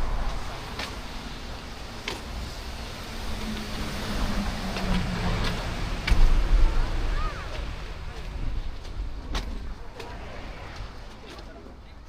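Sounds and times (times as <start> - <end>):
vehicle passing with engine hum: 0.0 - 8.1
steady road rumble: 0.0 - 12.0.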